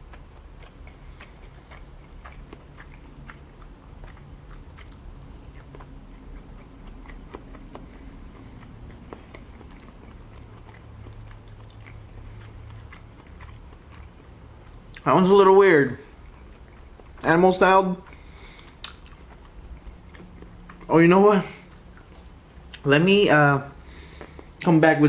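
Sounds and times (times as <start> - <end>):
person chewing wet food: 0.0 - 23.0, 23.7 - 24.7
small mouth clicks: 18.7 - 19.4.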